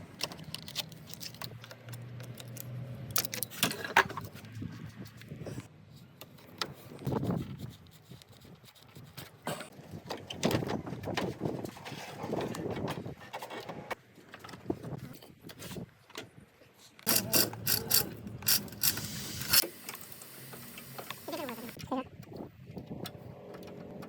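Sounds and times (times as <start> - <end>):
mechanical clicking and rattling: 17.0 - 24.0.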